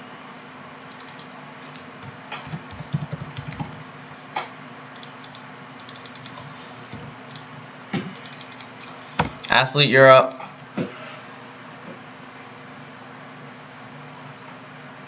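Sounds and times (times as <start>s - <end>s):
low room hum: 0.0s - 15.0s
typing on keyboard: 0.9s - 3.8s, 5.0s - 7.4s, 8.2s - 8.7s.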